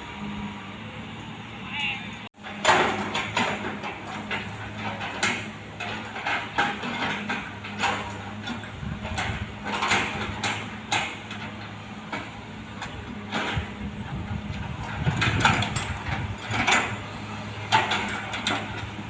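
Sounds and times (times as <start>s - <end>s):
excavator diesel engine humming: 0.0s - 19.0s
machine clanks and knocks: 2.4s - 19.0s.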